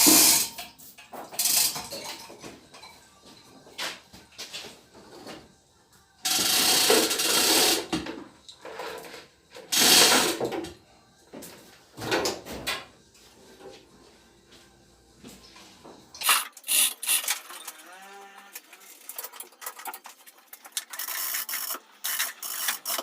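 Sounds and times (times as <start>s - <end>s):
ratcheting winch clicking: 16.2s - 23.0s.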